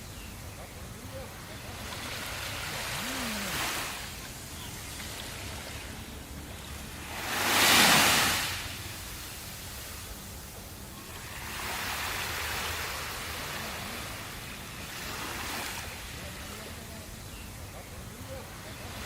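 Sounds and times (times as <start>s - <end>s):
surf washing on shore: 0.0s - 19.0s
wave breaking: 5.0s - 9.4s.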